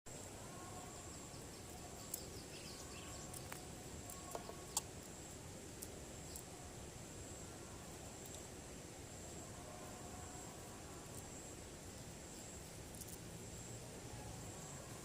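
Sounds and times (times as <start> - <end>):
faint bird chirps: 0.1 - 5.4
high insect tone: 0.1 - 15.0.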